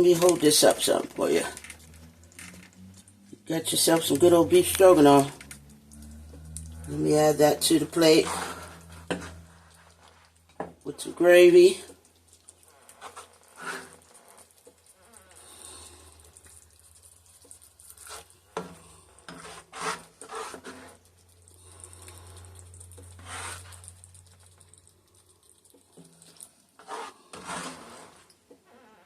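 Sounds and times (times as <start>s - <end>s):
low steady hum: 0.0s - 13.4s
spoon scraping a pot: 6.3s - 10.8s, 17.4s - 24.2s, 26.0s - 28.4s.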